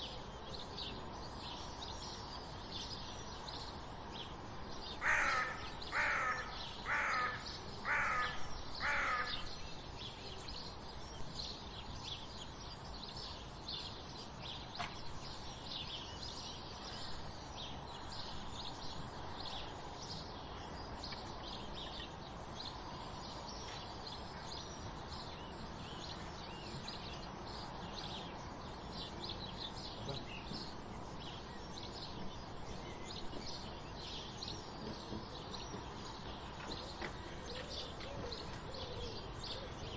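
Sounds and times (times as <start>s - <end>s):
small birds chirping: 0.0s - 39.9s
loud harsh caws: 5.0s - 9.5s.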